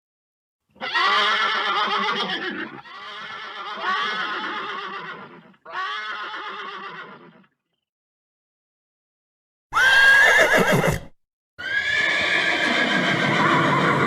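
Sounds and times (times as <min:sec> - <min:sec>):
horse whinnying: 0:00.8 - 0:07.6, 0:09.7 - 0:14.0.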